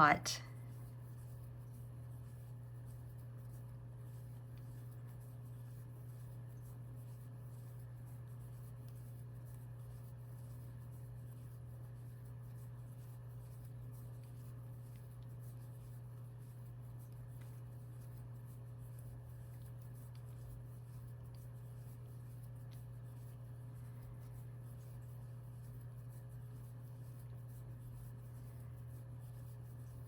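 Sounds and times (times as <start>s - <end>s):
crochet hook scratching yarn: 0.8s - 30.0s.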